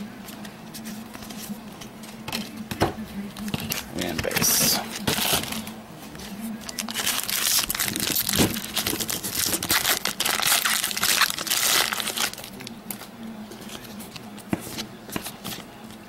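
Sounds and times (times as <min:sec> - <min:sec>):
plastic wrapper crinkling: 0:03.4 - 0:05.8, 0:06.6 - 0:14.3.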